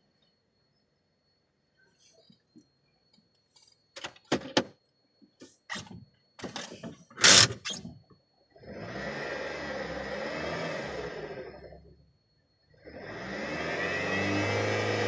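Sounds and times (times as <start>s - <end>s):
steady running noise with hum: 3.1s - 15.0s.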